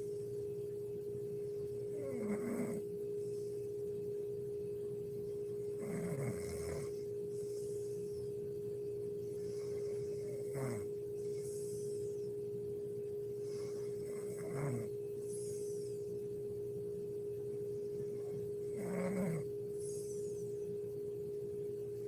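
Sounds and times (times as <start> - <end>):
steady pitched hum: 0.0 - 22.0
woman snoring: 1.9 - 2.9, 5.8 - 7.7, 9.4 - 12.1, 13.4 - 16.0, 18.2 - 20.5.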